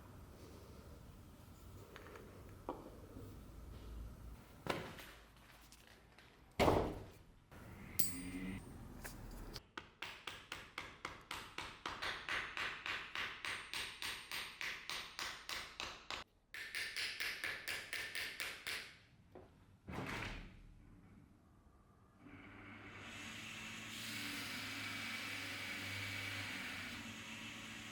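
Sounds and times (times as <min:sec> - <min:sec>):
knocks with metallic ring: 0:08.0 - 0:08.6.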